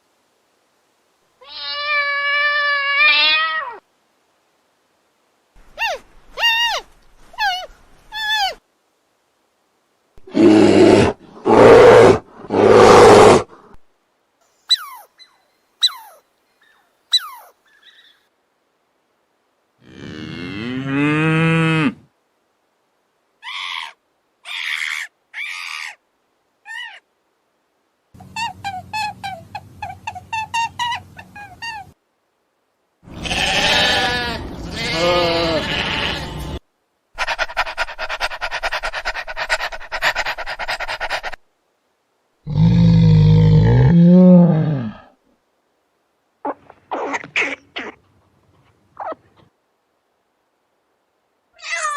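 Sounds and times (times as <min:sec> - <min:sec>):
loud harsh animal calls: 0:33.1 - 0:36.6, 0:37.2 - 0:41.4
sheep or goat bleating: 0:33.1 - 0:36.6
cat meowing: 0:33.2 - 0:36.6, 0:51.6 - 0:51.9.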